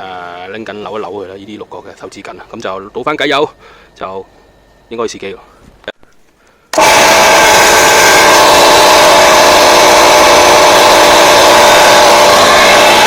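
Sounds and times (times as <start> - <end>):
air compressor running: 6.7 - 13.0.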